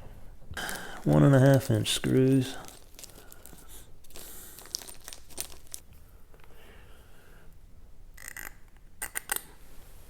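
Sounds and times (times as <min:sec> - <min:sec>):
screws clicking and rattling: 0:08.2 - 0:09.5.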